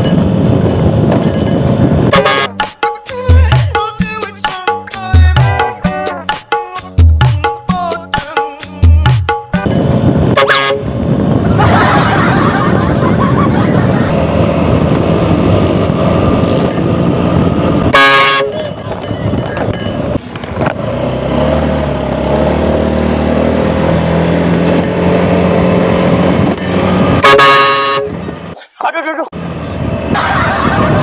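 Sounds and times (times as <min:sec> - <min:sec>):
motorcycle engines running: 0:00.0 - 0:02.6, 0:08.8 - 0:28.6, 0:29.3 - 0:31.0
street traffic: 0:00.0 - 0:31.0
loud horn blast: 0:02.1 - 0:02.7, 0:10.3 - 0:11.1, 0:17.9 - 0:18.7, 0:27.0 - 0:28.4.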